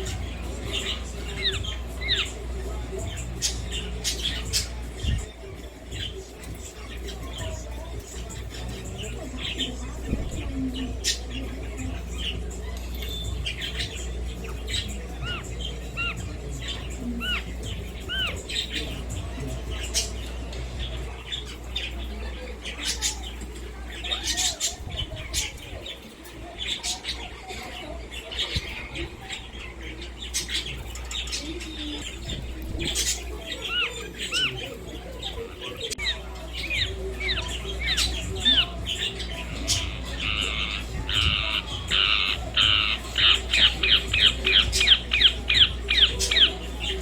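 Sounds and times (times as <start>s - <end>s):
parakeet calling: 0.0s - 47.0s.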